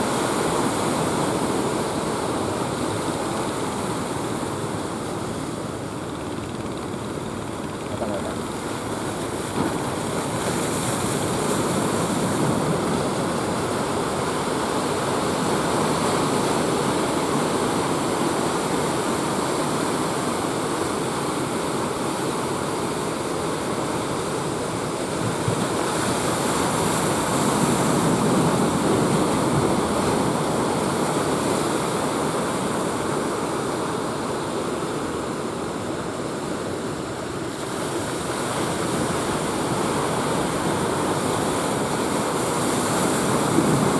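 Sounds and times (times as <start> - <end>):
ocean surf breaking: 0.0 - 43.9.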